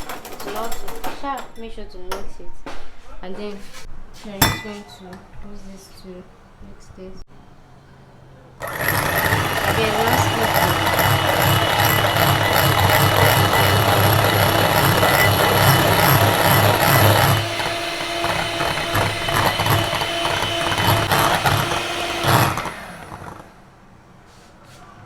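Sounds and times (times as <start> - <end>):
electric mixer motor whirring: 8.6 - 23.6.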